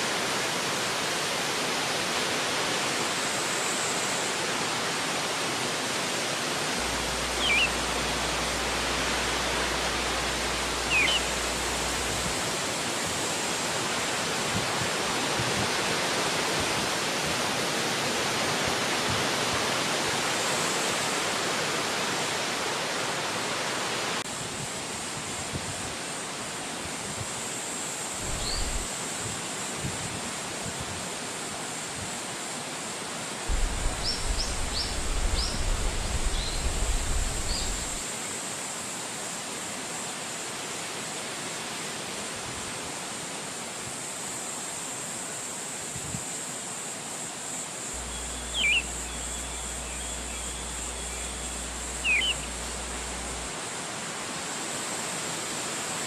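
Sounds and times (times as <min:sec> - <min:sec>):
wind through trees: 0:00.0 - 0:56.0
bird chirps: 0:07.3 - 0:07.9, 0:10.8 - 0:11.5, 0:48.0 - 0:53.2
low gusty rumbles: 0:33.5 - 0:38.0.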